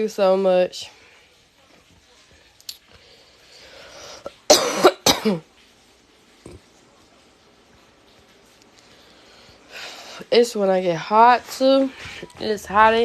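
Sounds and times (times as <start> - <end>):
person coughing: 4.5 - 5.4.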